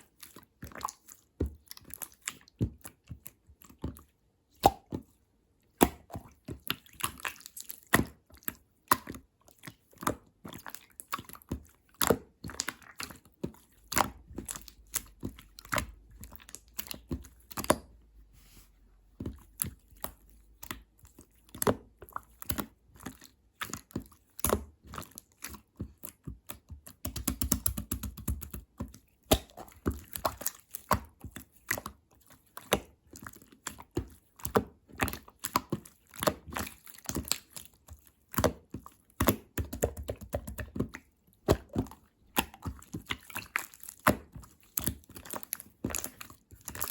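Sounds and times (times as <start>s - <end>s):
slime clicking and popping: 26.5s - 31.9s
squishy slime crackling: 29.2s - 46.9s.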